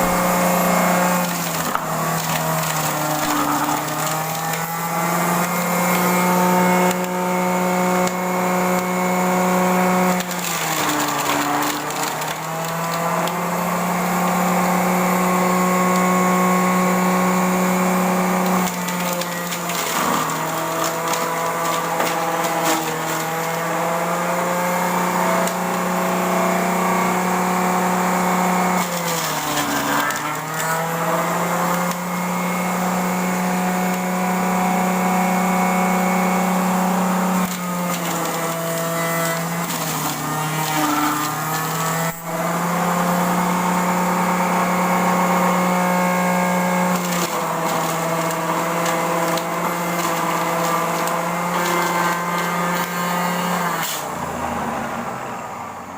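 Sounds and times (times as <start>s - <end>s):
electric blender motor running: 0.0s - 55.4s.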